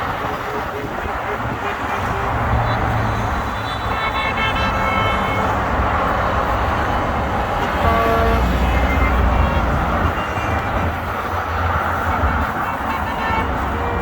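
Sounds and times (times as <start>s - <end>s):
highway traffic passing: 0.0s - 14.0s
low vehicle horn: 0.8s - 14.0s
high-pitched vehicle horn: 1.3s - 5.6s, 7.6s - 14.0s.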